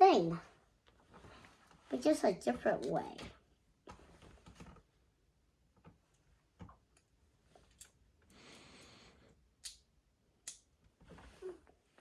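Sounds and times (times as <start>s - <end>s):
soft rustle: 0.4s - 5.0s.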